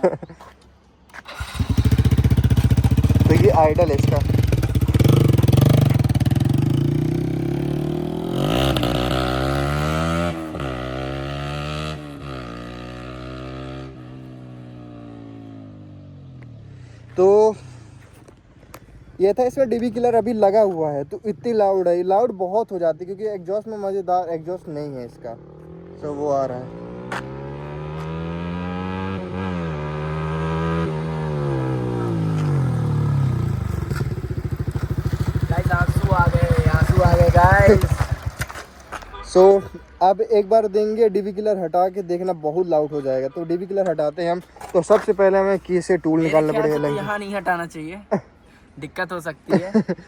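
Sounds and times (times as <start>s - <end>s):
motorcycle engine revving: 1.1s - 17.0s, 25.1s - 39.6s.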